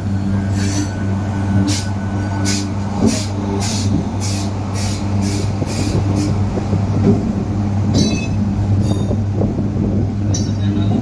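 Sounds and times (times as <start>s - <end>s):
train mechanical hum: 0.0s - 11.0s.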